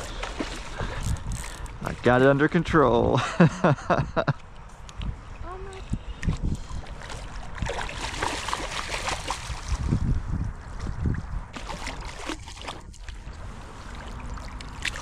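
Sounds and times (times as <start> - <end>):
splashing in shallow water: 0.0 - 1.9, 6.2 - 10.1, 11.5 - 15.0.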